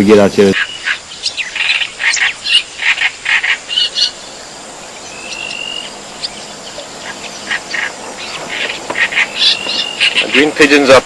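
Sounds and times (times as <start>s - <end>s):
short rough bird calls: 0.5s - 10.6s
thin rising bird whistle: 3.7s - 10.4s.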